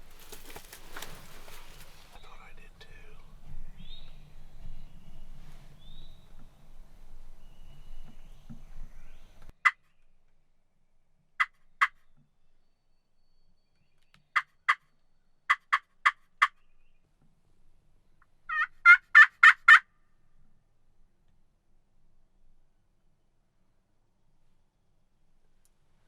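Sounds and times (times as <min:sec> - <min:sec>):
turkey clucking: 0:18.5 - 0:19.8
turkey gobbling: 0:18.5 - 0:19.8.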